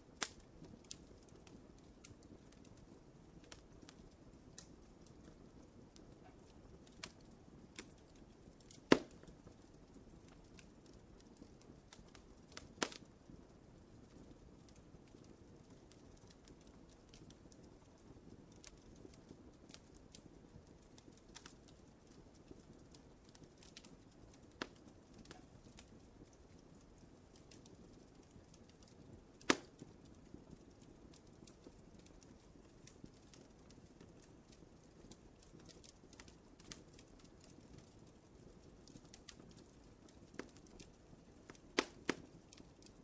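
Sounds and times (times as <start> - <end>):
wood fire crackling: 0.0 - 43.0
sharp fire pops: 6.2 - 10.7, 11.4 - 13.1, 23.6 - 25.9, 29.4 - 30.0, 41.5 - 42.6.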